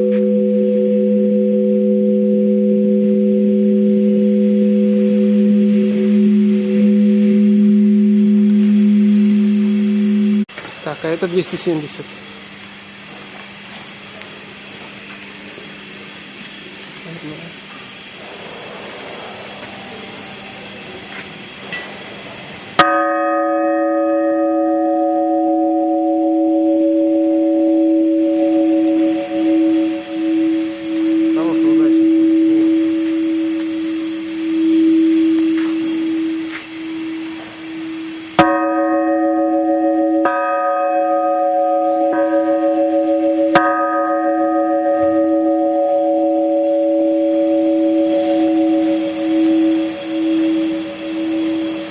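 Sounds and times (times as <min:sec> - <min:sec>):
church bell ringing: 0:00.0 - 0:10.5, 0:22.7 - 0:51.9
steady background hum: 0:00.0 - 0:51.9.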